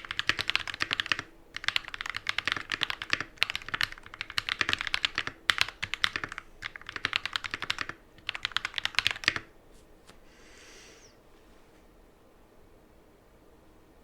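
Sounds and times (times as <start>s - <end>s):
mechanical keyboard typing: 0.0s - 9.5s.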